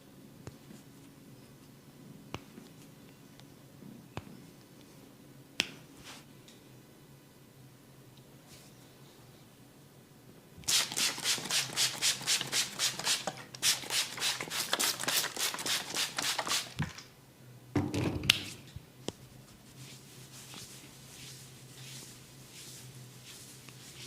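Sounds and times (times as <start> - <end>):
hands rubbing during massage: 18.4 - 24.0.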